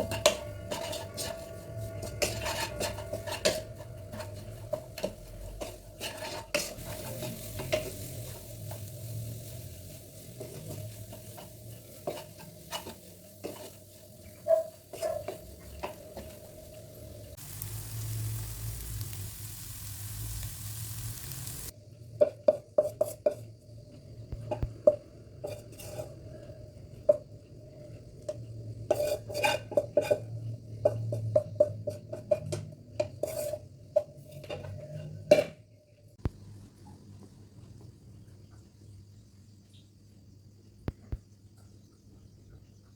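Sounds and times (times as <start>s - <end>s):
spatula scraping a pan: 0.0s - 18.6s, 19.5s - 23.5s, 25.4s - 35.3s
food sizzling in a pan: 0.0s - 23.6s.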